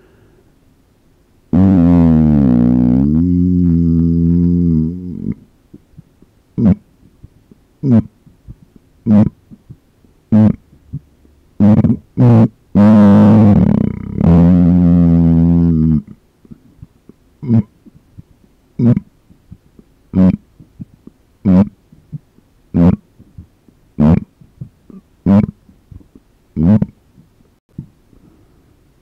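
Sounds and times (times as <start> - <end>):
person burping: 17.4 - 17.7.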